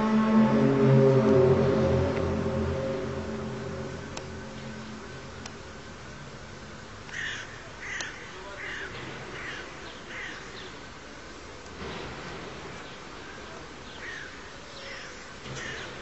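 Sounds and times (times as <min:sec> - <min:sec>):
low steady hum: 0:00.0 - 0:08.4
bird cawing: 0:07.1 - 0:10.6, 0:14.0 - 0:15.9.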